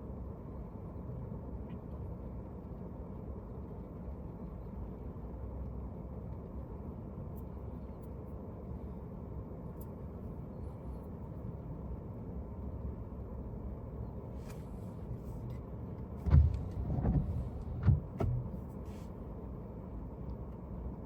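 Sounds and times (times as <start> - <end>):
car driving rumble: 14.2 - 20.6.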